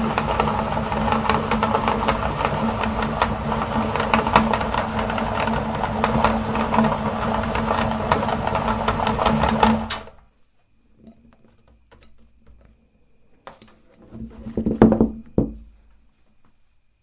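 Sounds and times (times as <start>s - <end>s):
meat grinder motor hum: 0.0s - 10.2s.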